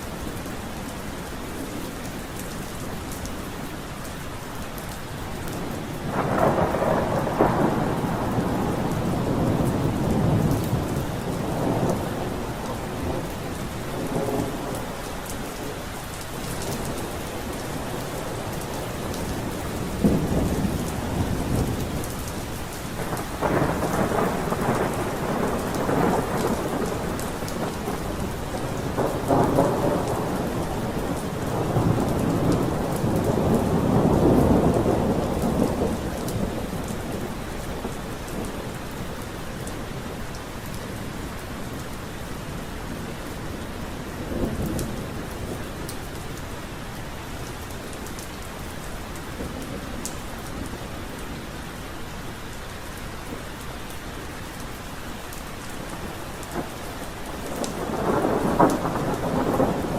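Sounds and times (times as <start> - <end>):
rain falling: 0.0 - 59.9
rolling thunder: 5.6 - 15.8, 16.5 - 39.7, 44.0 - 46.1, 55.9 - 59.9.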